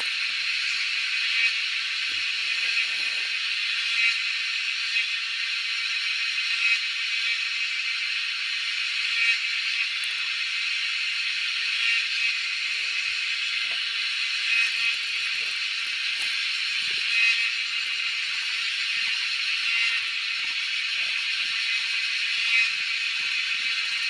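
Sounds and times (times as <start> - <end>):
cicadas buzzing: 0.0 - 24.0.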